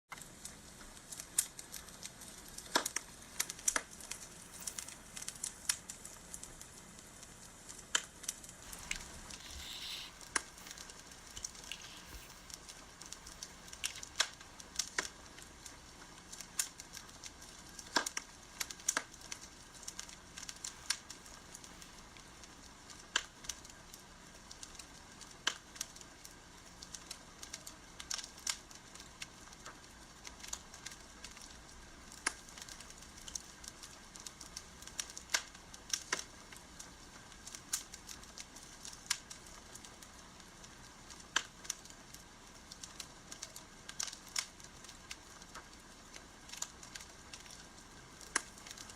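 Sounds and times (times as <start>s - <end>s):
wood fire crackling: 0.1s - 48.9s.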